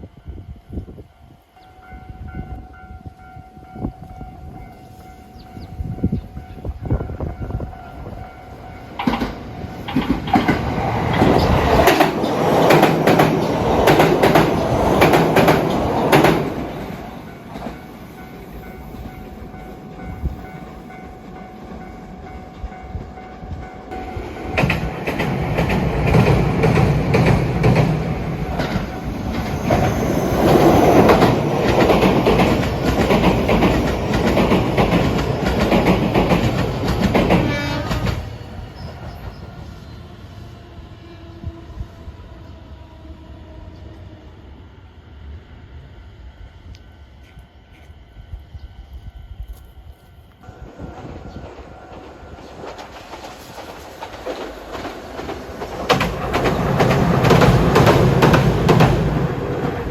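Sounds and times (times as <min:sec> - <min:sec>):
train wheels clacking on rails: 0:04.6 - 0:39.6, 0:50.7 - 0:59.9.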